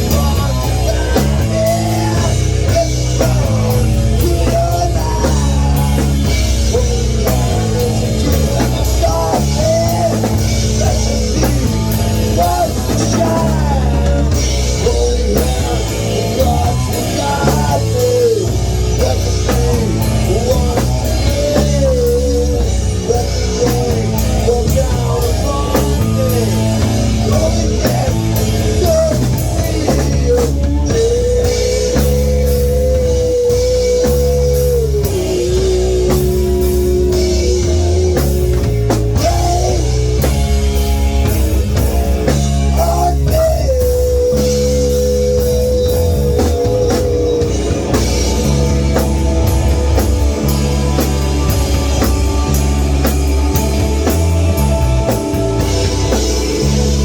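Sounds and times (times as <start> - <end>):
rock band instrumental: 0.0 - 57.0
lead electric guitar sustained bends: 43.8 - 57.0.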